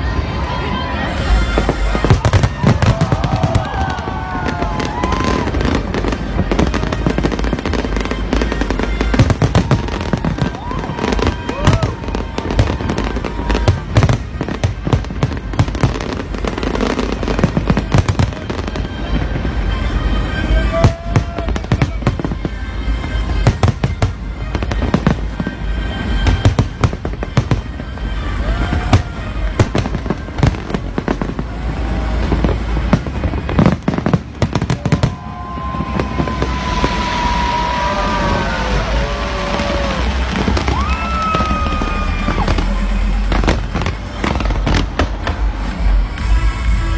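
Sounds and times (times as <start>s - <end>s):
fireworks bangs and crackles: 0.0s - 46.9s
music playing: 0.0s - 46.9s.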